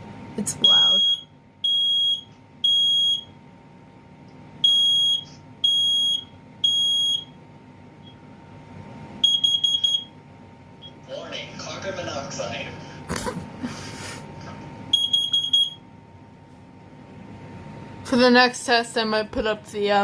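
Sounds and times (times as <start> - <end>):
fast short alarm beeps: 0.6 - 3.3, 4.6 - 7.3, 9.2 - 10.1, 14.9 - 15.8
smoke alarm beeping: 0.6 - 3.4, 4.6 - 7.4, 9.2 - 10.2, 14.9 - 15.9.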